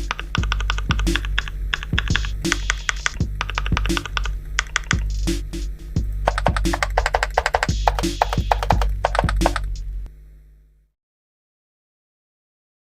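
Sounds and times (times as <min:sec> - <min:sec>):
background music with drum hits: 0:00.0 - 0:04.2, 0:04.8 - 0:09.8
keyboard typing clicks: 0:00.1 - 0:05.0, 0:06.3 - 0:09.6.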